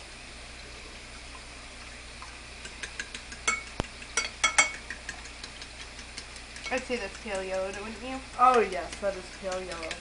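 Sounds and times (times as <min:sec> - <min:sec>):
fork clinking against dish: 0:02.6 - 0:06.8
fork beating eggs in a dish: 0:02.6 - 0:10.0.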